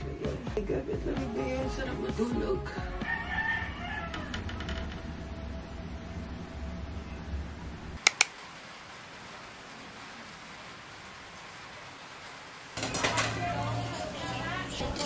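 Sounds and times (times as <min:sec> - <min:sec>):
sharp clicks: 0:08.0 - 0:08.4.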